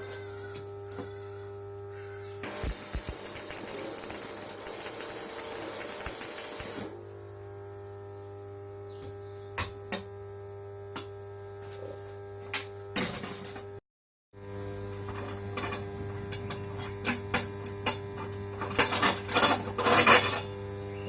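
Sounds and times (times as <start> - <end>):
steady hum: 0.0 - 11.6.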